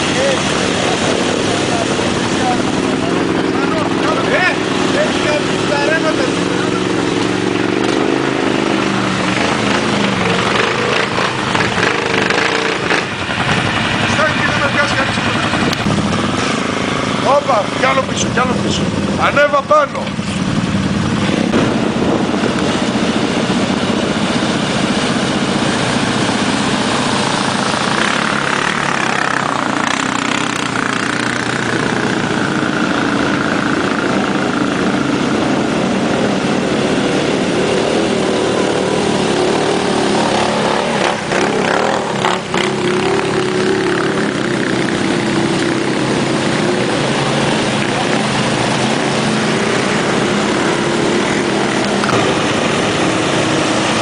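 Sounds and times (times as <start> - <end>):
atv engine running: 0.0 - 54.0
steady rushing noise: 0.0 - 54.0.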